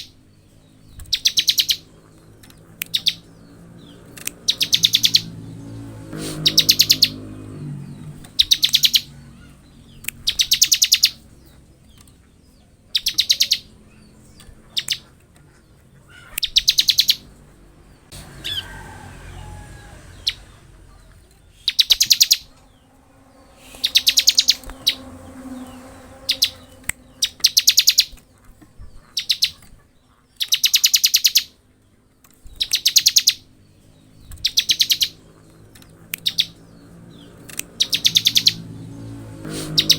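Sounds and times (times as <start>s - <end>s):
bird buzzing trill: 21.8s - 28.2s.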